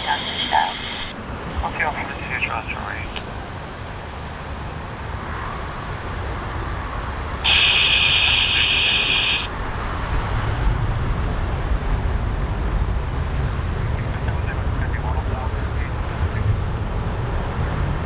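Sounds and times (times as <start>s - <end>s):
high-pitched radio buzzing hiss: 0.0s - 3.4s, 7.4s - 10.3s
aircraft engine noise: 0.0s - 18.0s
gusting wind: 0.0s - 18.0s.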